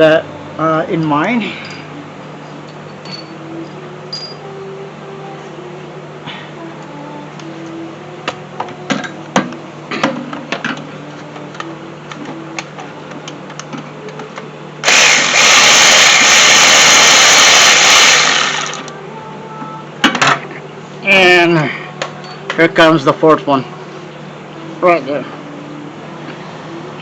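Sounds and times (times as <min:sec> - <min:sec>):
power tool running: 0:14.8 - 0:18.9.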